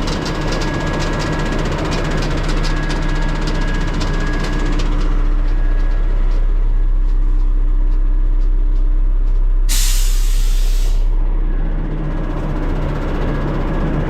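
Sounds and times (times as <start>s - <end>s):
diesel truck engine running: 0.0s - 14.0s
air brake hiss: 9.7s - 11.2s.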